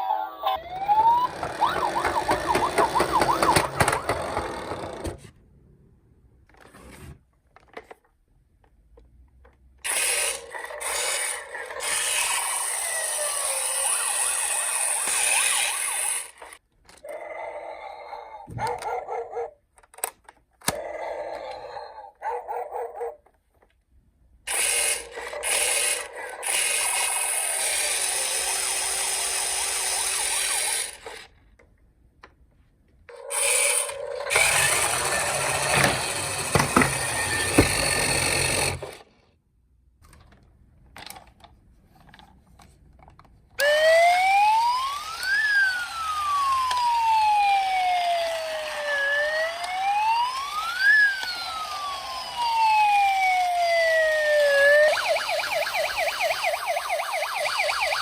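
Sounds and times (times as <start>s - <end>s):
toy siren wailing: 0.0s - 4.8s, 10.1s - 17.2s, 33.1s - 38.9s, 43.6s - 58.0s.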